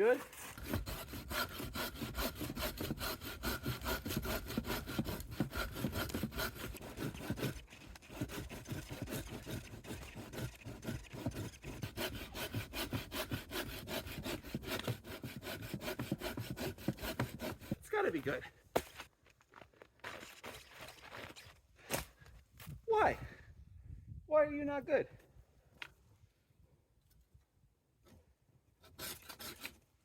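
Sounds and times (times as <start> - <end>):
handsaw rasping through wood: 0.2 - 17.8, 28.8 - 29.8.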